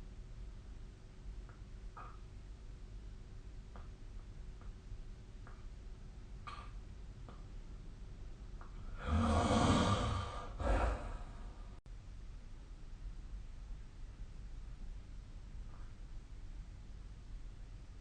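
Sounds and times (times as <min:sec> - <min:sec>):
person breathing heavily in sleep: 0:08.9 - 0:11.8.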